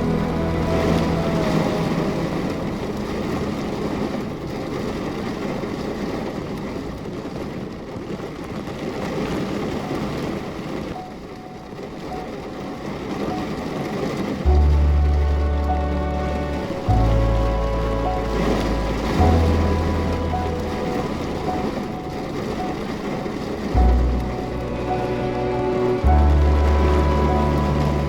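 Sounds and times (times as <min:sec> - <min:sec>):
music: 0:00.0 - 0:03.4, 0:13.2 - 0:28.0
heavy rain falling: 0:00.0 - 0:28.0.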